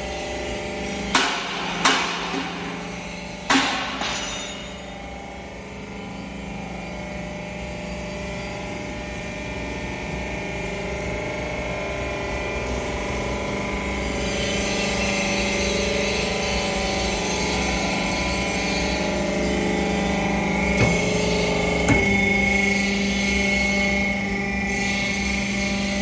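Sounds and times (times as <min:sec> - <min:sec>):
hydraulic press motor humming: 0:00.7 - 0:07.0, 0:12.6 - 0:26.0.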